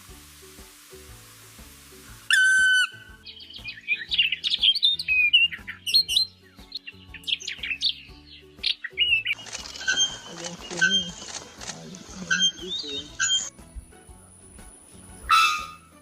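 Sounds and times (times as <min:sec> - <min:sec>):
bird whistling and chirping: 0:02.3 - 0:11.1, 0:12.3 - 0:13.5, 0:15.2 - 0:15.8.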